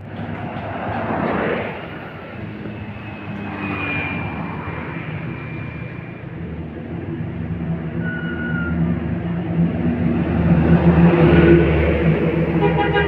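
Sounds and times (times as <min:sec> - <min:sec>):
vehicles passing close by: 0:00.0 - 0:13.0.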